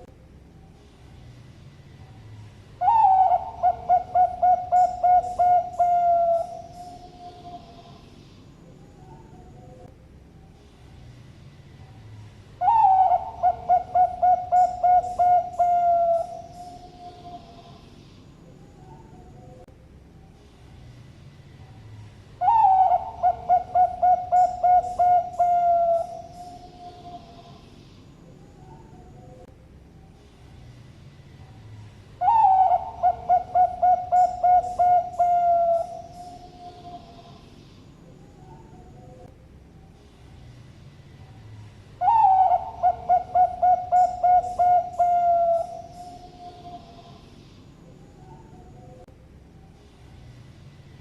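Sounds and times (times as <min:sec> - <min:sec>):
dove cooing: 0:02.8 - 0:08.0, 0:12.6 - 0:17.8, 0:22.4 - 0:27.6, 0:32.2 - 0:37.4, 0:42.0 - 0:47.2.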